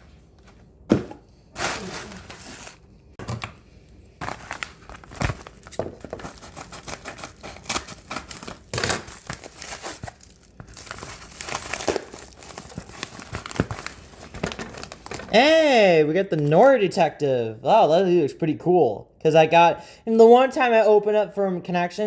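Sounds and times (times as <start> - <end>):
packaging tearing and crinkling: 1.6 - 2.8, 4.2 - 15.3.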